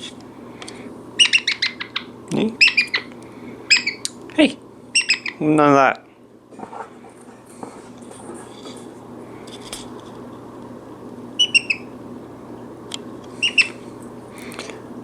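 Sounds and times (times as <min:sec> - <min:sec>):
parrot chirping: 0:01.2 - 0:03.1, 0:03.7 - 0:04.1, 0:04.9 - 0:05.4, 0:11.4 - 0:12.0, 0:13.4 - 0:13.8.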